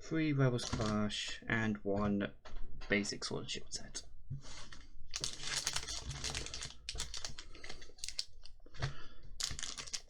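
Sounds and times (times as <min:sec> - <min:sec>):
foil wrappers crinkling: 0:05.1 - 0:08.5, 0:09.4 - 0:10.0.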